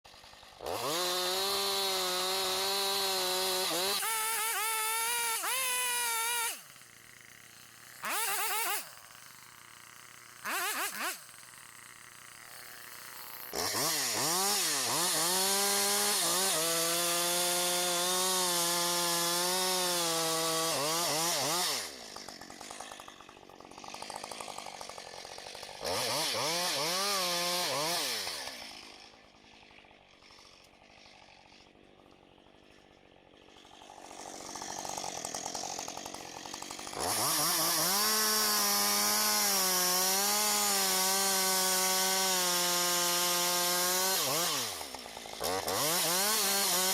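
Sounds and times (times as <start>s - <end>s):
chainsaw cutting wood: 0.0s - 46.9s.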